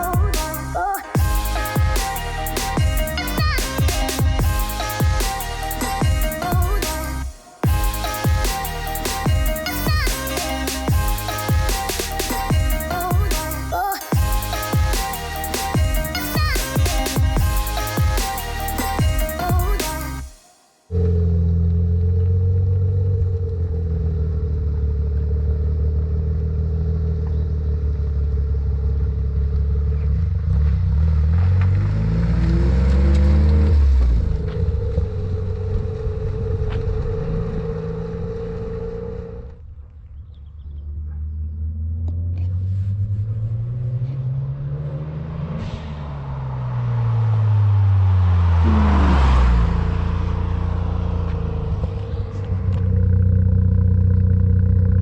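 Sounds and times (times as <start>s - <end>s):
car engine accelerating: 20.9s - 55.0s.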